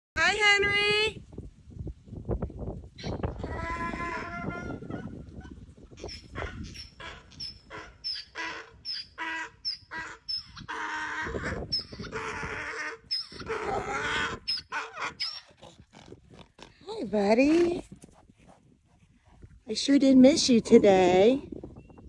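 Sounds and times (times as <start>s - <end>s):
cow bawling: 3.2s - 5.2s, 6.0s - 17.9s.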